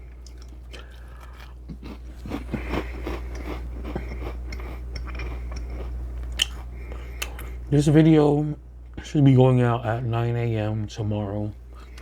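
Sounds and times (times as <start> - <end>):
chewing with wet mouth smacks: 0.1 - 7.6.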